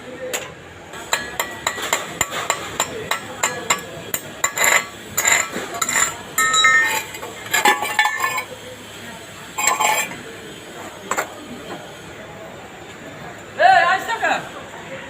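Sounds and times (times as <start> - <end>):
metallic clinks and knocks: 1.2 - 8.5.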